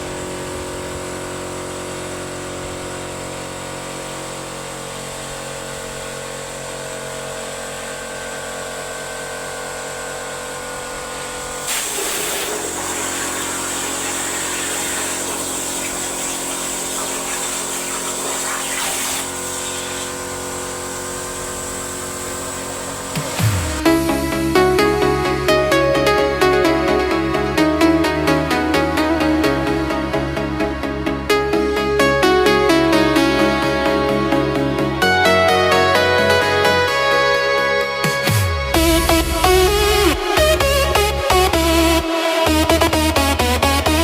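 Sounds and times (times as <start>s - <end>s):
plasma cutting machine hum: 0.0s - 24.2s
plasma torch hissing: 10.7s - 23.8s.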